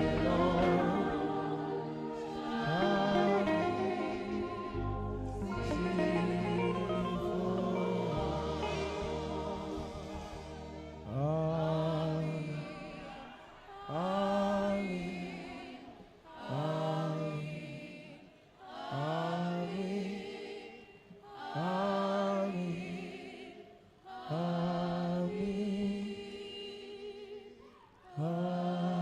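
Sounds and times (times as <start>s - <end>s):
slow melodic line with vibrato: 0.0s - 11.6s.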